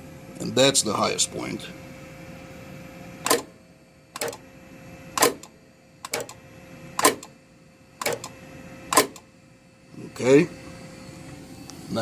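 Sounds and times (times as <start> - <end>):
faint machine hum: 0.0 - 12.0
machine clamp clacking: 3.3 - 3.5, 4.2 - 4.4, 5.2 - 6.4, 7.0 - 7.3, 8.0 - 8.3, 8.9 - 9.2.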